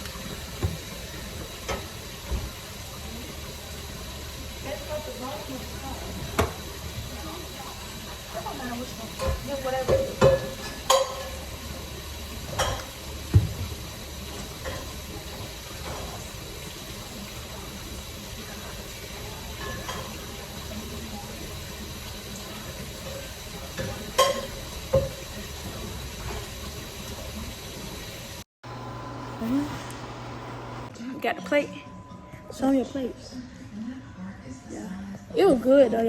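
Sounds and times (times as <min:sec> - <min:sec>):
utensils clinking against cookware: 0:08.7 - 0:11.8, 0:12.4 - 0:13.0, 0:14.3 - 0:16.3, 0:19.4 - 0:20.4, 0:23.0 - 0:25.6.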